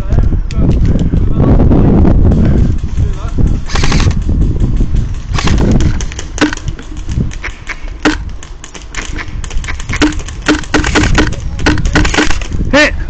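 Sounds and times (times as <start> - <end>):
airsoft guns firing: 3.7 - 12.6.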